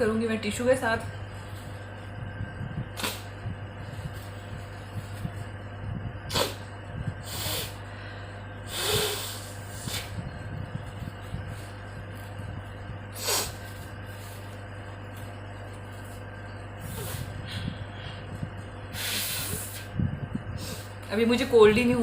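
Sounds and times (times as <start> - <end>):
steady low hum: 0.0 - 22.0
woman blowing her nose: 3.0 - 3.3, 6.3 - 7.8, 8.6 - 10.2, 13.1 - 13.7, 19.0 - 19.9.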